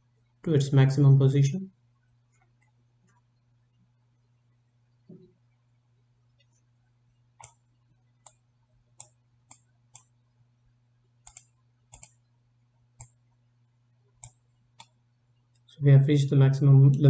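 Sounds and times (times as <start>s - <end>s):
faint electrical hum: 0.0s - 17.0s
computer mouse clicking: 7.4s - 8.4s, 9.0s - 10.2s, 11.2s - 12.3s, 13.0s - 13.2s, 14.2s - 15.7s.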